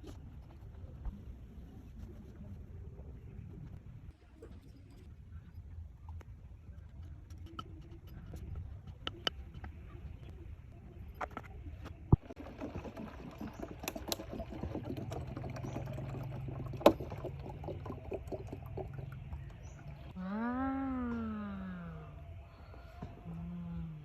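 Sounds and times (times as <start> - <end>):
water splashing and trickling: 12.2 - 20.2.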